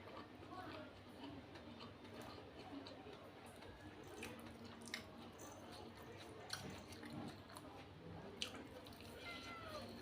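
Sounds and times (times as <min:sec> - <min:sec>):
person chewing food: 0:00.0 - 0:09.2.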